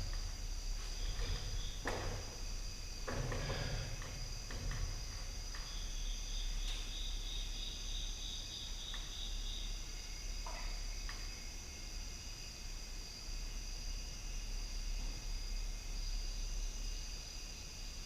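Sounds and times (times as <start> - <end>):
light knocks and rustles: 0.0 - 5.8
crickets chirring: 0.0 - 18.0.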